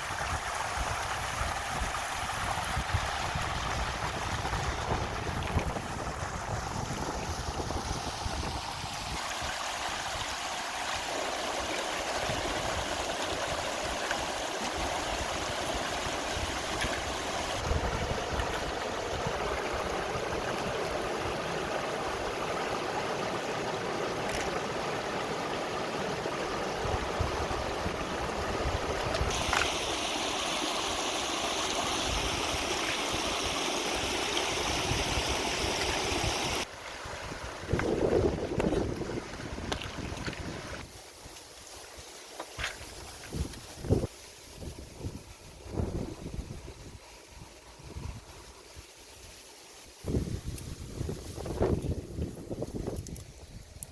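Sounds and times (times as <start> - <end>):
wind buffeting microphone: 0.0 - 9.2, 14.8 - 21.5, 31.9 - 40.9, 43.3 - 47.0, 50.0 - 53.6
stream water flowing: 0.0 - 44.1, 49.6 - 53.9.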